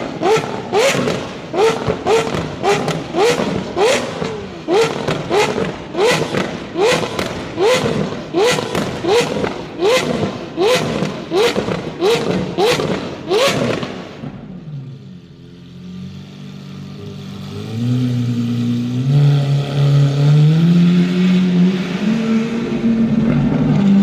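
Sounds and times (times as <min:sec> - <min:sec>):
exhaust cracks: 0:00.0 - 0:14.6
car accelerating away: 0:00.0 - 0:15.0, 0:15.7 - 0:24.0
sports car engine revving: 0:00.0 - 0:24.0.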